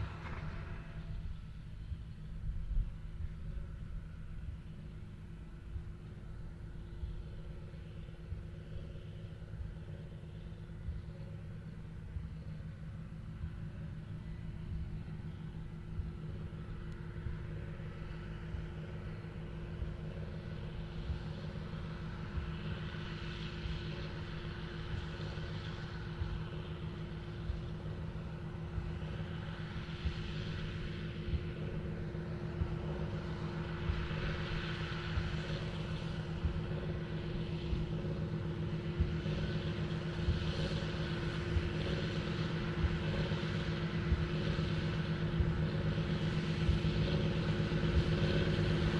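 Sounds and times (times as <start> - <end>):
tractor diesel engine under load: 0.0 - 2.1, 4.7 - 48.9
baler working clatter: 0.0 - 2.4.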